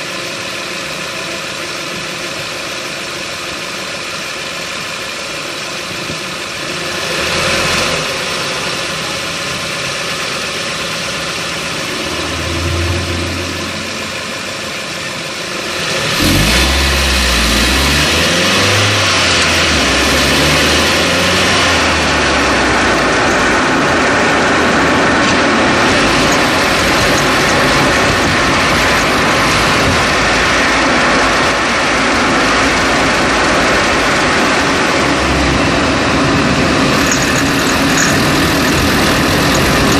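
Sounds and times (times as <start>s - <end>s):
road and wind noise: 0.0s - 39.9s
suspension and tyre rumbles: 0.0s - 39.9s.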